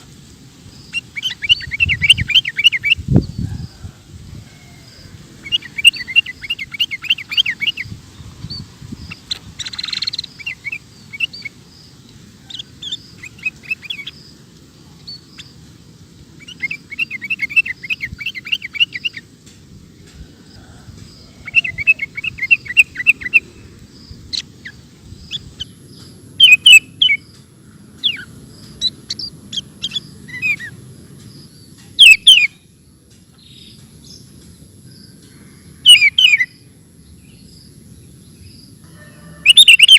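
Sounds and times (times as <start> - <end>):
bird chirping in rapid runs: 5.4 - 15.6, 16.4 - 19.3, 21.1 - 32.6, 39.5 - 39.9.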